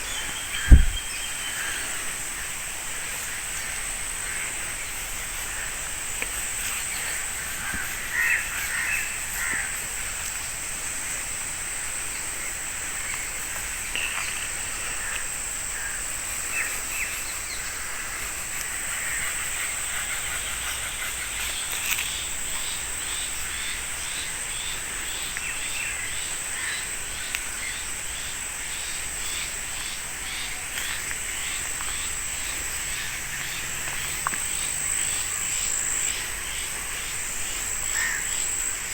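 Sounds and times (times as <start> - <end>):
bird calls: 0.0 - 1.8
pulsing insect chirp: 0.0 - 38.9
high-pitched insect drone: 3.2 - 38.9.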